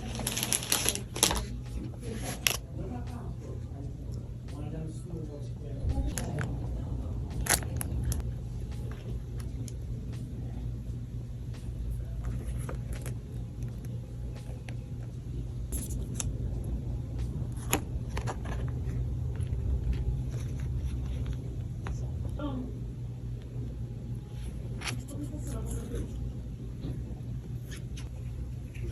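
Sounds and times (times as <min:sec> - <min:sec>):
steady low hum: 0:00.0 - 0:28.9.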